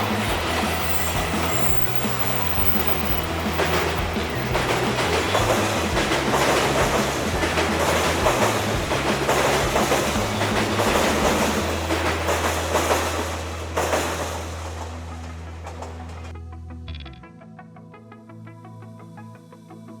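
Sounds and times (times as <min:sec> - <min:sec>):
train passing with wheels clacking: 0:00.0 - 0:16.3.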